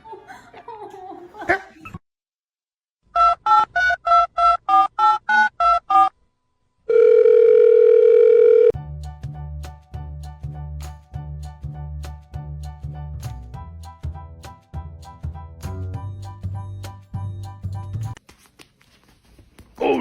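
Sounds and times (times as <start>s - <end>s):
steady telephone tone: 6.9s - 8.8s
music with steady beat: 8.8s - 18.2s.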